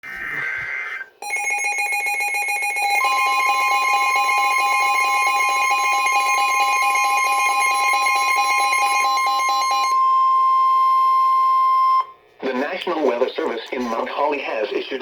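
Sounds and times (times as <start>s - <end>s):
two-tone alert alarm: 1.2s - 12.1s.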